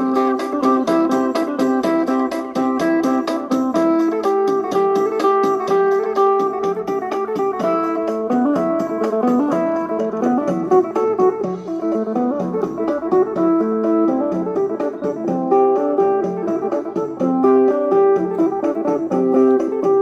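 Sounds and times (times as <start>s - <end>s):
plucked string melody: 0.0s - 20.0s
steady beat: 0.0s - 20.0s.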